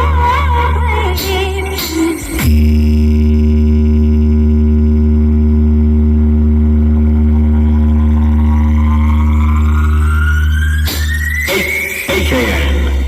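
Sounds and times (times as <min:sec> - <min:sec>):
deep bass drone: 0:00.0 - 0:11.5
faint rising tone: 0:06.4 - 0:11.9.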